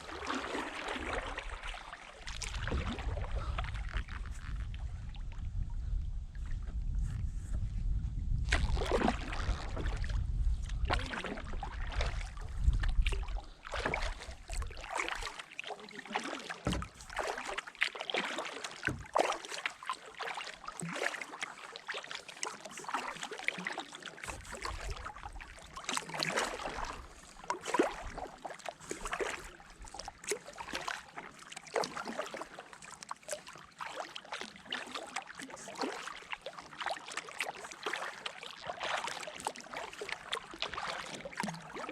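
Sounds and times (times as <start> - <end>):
paddle splashing in water: 0.0 - 5.4, 8.4 - 41.9
wind rumble on microphone: 2.3 - 14.8.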